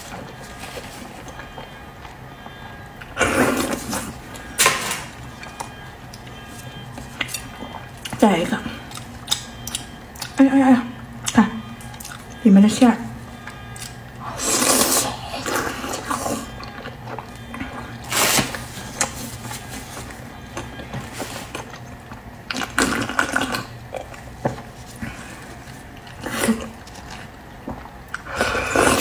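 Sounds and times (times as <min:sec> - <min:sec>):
chewing and mouth sounds: 0:00.0 - 0:04.6, 0:05.2 - 0:10.4, 0:11.2 - 0:12.4, 0:13.2 - 0:29.0
loud wet slurps: 0:14.2 - 0:16.6.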